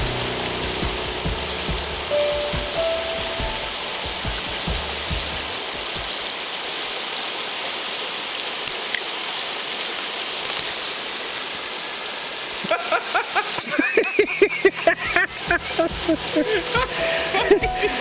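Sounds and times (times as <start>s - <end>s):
low thumps: 0.0s - 6.2s
creek water rushing over riffle: 0.0s - 18.0s.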